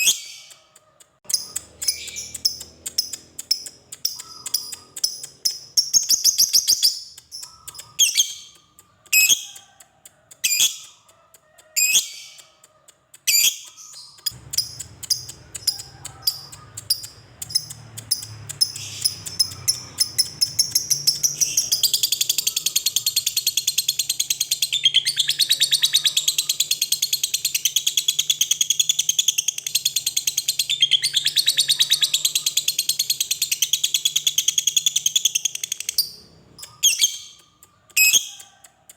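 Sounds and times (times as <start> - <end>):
lovebird chattering trill: 0.0 - 9.8, 10.4 - 38.6
lovebird shrill calls: 3.5 - 9.6, 13.3 - 37.4.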